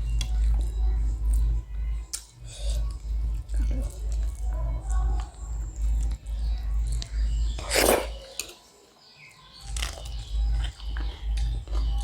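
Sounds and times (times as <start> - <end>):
person chewing food: 6.9 - 8.4
crunchy bite: 7.6 - 8.3.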